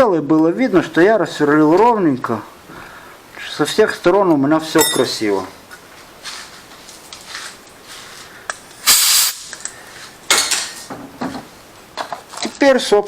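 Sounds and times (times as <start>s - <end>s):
hissing spray bursts: 8.8s - 9.5s.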